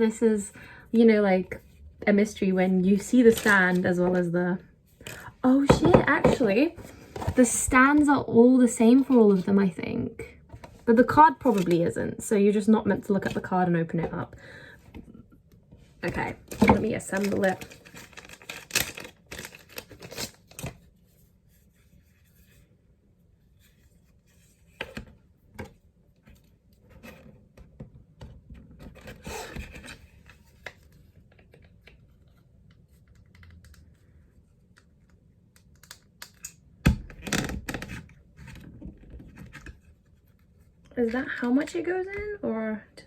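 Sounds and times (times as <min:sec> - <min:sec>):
plastic parts clicking and scraping: 0:11.4 - 0:11.8, 0:16.0 - 0:20.8.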